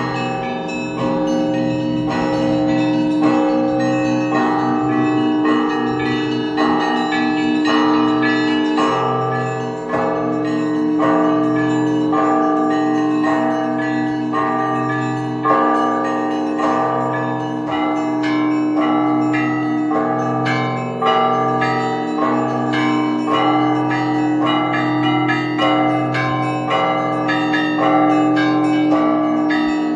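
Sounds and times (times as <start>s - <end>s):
deep bells ringing: 0.0s - 29.9s
small bells struck rapidly: 0.0s - 29.9s.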